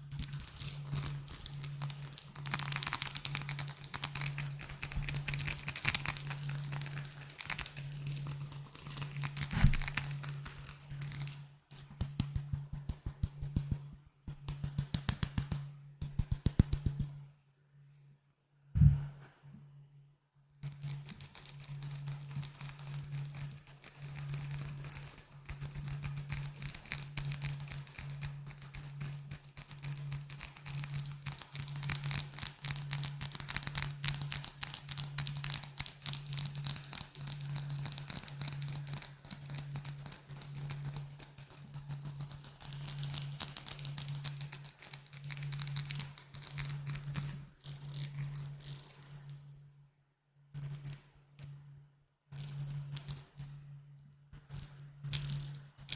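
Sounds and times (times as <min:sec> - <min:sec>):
low pulsing hum: 0:00.0 - 0:20.2
fingers tapping on glass bottles: 0:20.6 - 0:47.4.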